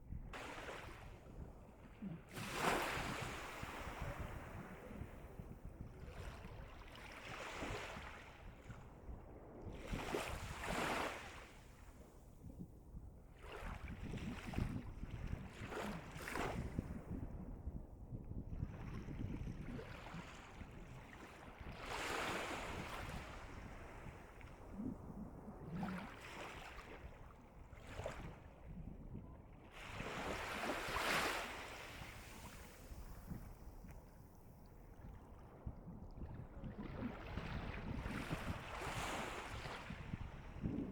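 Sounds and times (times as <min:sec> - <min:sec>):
sea waves breaking on shore: 0:00.3 - 0:05.3, 0:09.8 - 0:12.0, 0:19.9 - 0:28.5, 0:29.7 - 0:33.6, 0:36.8 - 0:40.9.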